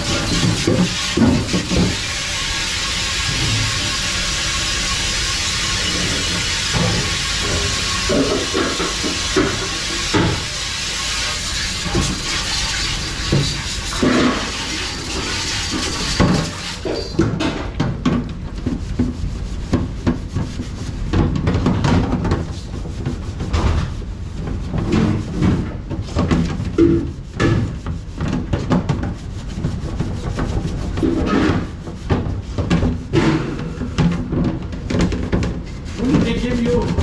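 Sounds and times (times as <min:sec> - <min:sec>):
dishes clattering: 0:00.0 - 0:02.2, 0:08.1 - 0:17.4
spraying water: 0:00.0 - 0:17.2, 0:35.7 - 0:37.0.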